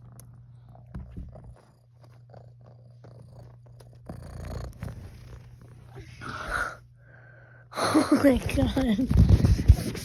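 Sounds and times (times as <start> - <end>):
cat purring: 0.0 - 6.8
rustling and handling noise: 8.3 - 10.0.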